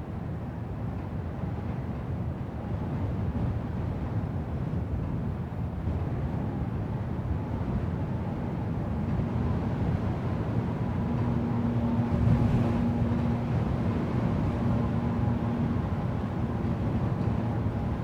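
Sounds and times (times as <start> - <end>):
low wind noise: 8.6 - 18.0
clear steady hum tone: 8.9 - 18.0.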